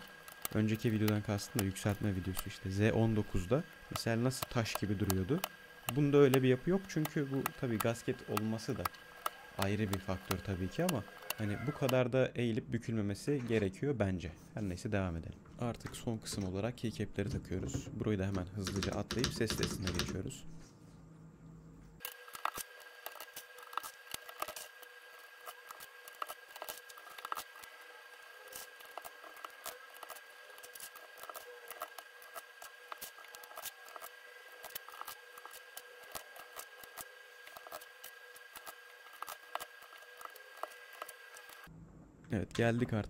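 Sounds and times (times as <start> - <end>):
faint steady hum: 0.0 - 43.0
keycaps clicking onto switches: 18.6 - 20.3.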